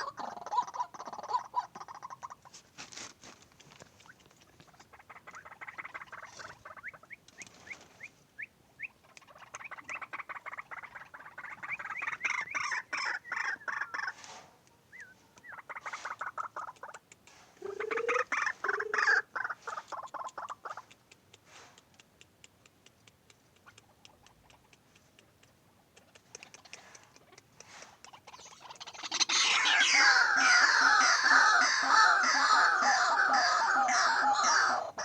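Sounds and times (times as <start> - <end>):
waterhen calling harsh notes: 9.6 - 14.2, 17.6 - 20.8, 28.3 - 35.0
faint rapid ticking: 19.9 - 28.9.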